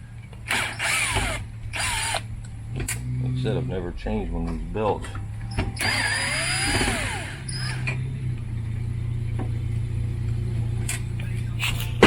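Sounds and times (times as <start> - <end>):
steady low hum: 0.0 - 12.0
power drill running: 0.5 - 2.3, 5.8 - 7.8.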